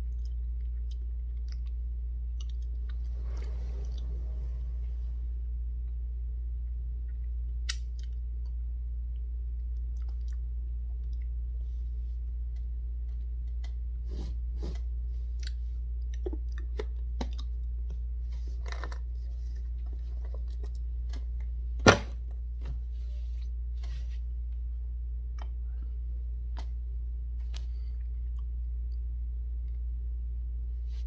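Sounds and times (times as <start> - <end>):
crunching and chewing snacks: 0.0 - 3.1, 5.9 - 14.0, 14.8 - 21.6
steady low hum: 0.0 - 31.0.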